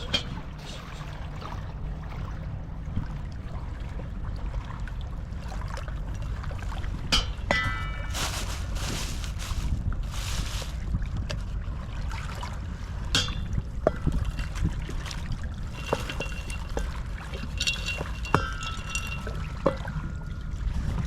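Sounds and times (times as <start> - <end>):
wind rumbling on microphone: 0.0 - 21.0
handling clicks and rustle: 7.6 - 10.9, 15.7 - 19.9.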